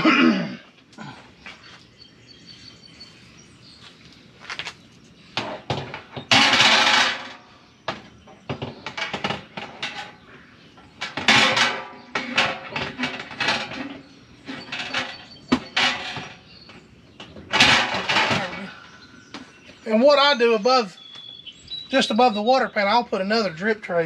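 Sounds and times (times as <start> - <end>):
metal racks clinking: 5.6 - 7.4, 10.9 - 16.5, 17.2 - 18.7.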